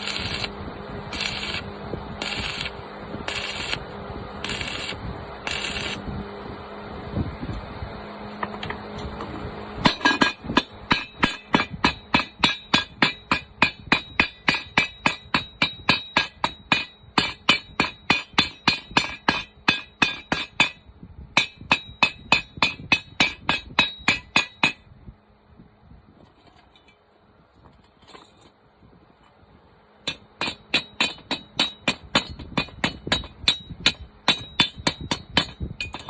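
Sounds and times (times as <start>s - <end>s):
steady hum: 0.0s - 36.0s
hammer striking metal: 9.8s - 20.8s, 21.4s - 24.8s, 30.0s - 36.0s.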